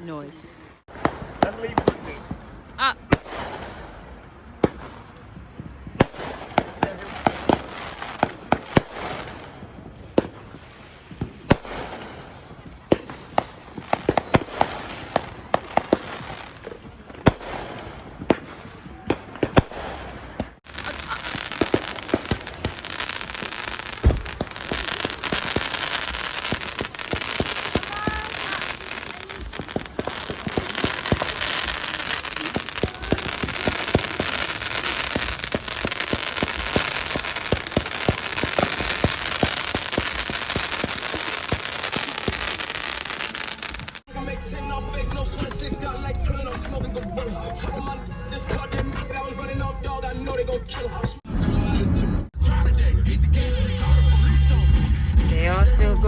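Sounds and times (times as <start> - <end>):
firecrackers crackling pops: 0.0 - 44.2
fireworks bangs: 0.0 - 52.4.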